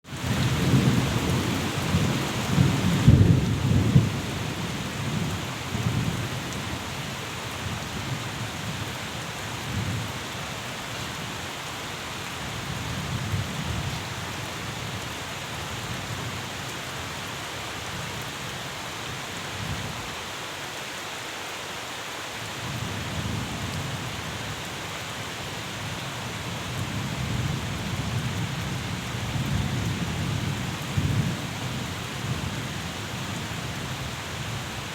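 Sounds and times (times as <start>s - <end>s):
steady rain: 0.0s - 34.9s
low rolling thunder: 0.2s - 6.2s.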